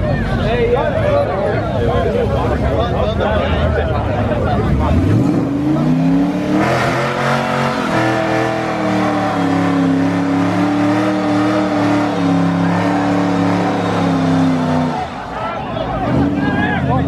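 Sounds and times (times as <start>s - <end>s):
car engine at high revs: 4.2s - 17.0s.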